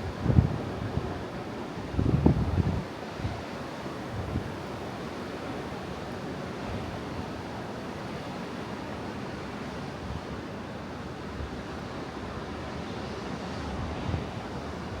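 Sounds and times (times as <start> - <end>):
wind rumble on microphone: 0.0 - 1.2, 1.8 - 4.6
ocean surf washing onto beach: 0.0 - 15.0.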